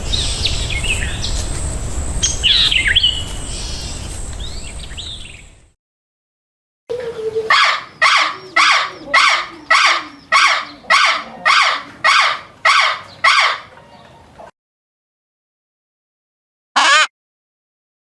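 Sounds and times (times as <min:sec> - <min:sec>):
bird harsh calls: 0:07.0 - 0:14.2.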